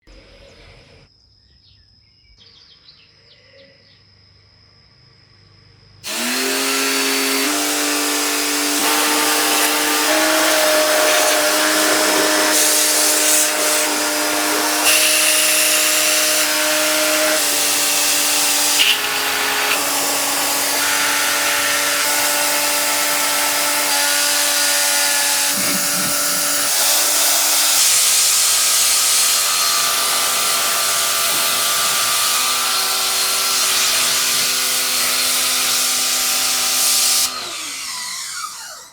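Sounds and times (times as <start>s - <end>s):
pressure washer motor whine: 6.0s - 38.9s
water jet hissing: 6.1s - 37.3s.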